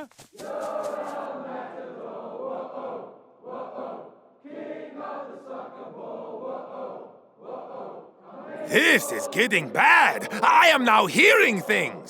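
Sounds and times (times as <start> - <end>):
distant crowd chanting: 8.7 - 12.0.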